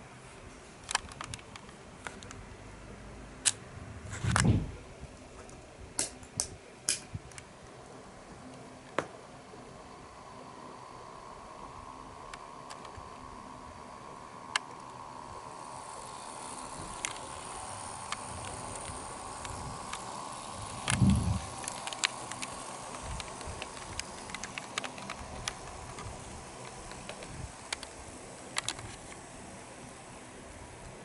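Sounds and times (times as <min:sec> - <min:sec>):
model train running: 0:10.3 - 0:31.0.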